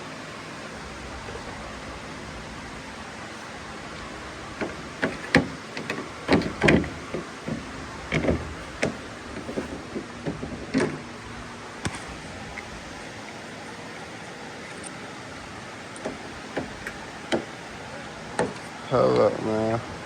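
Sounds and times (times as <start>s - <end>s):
door handle clicks and clatter: 4.6s - 9.0s.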